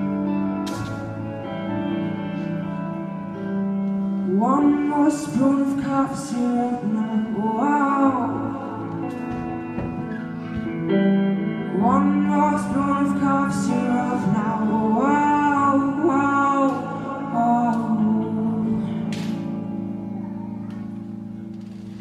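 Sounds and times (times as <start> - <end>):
instrumental accompaniment: 0.0 - 22.0.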